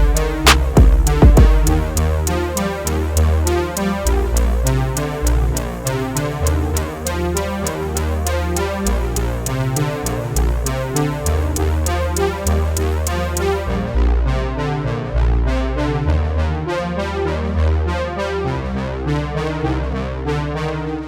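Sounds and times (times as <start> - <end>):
electronic music with beat: 0.0 - 13.6.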